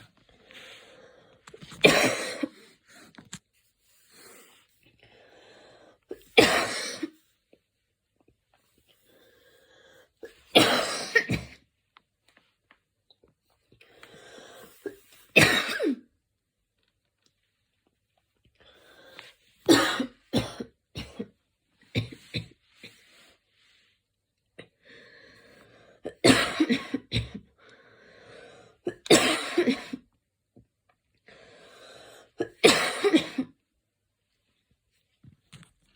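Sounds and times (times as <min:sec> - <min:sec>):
woman coughing: 0:01.8 - 0:02.6, 0:06.4 - 0:07.2, 0:10.6 - 0:11.5, 0:14.8 - 0:16.0, 0:19.7 - 0:21.3, 0:26.1 - 0:27.4, 0:28.9 - 0:30.0, 0:32.4 - 0:33.5.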